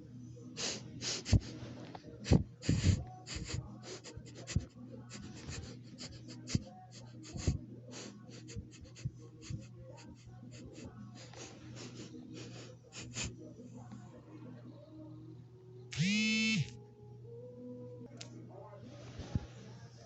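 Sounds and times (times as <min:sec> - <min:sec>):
puppy sniffing: 0:00.6 - 0:13.4.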